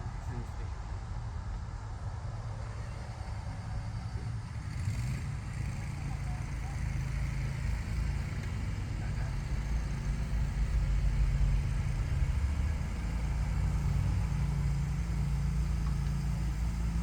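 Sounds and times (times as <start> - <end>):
motor droning: 2.6 - 17.0.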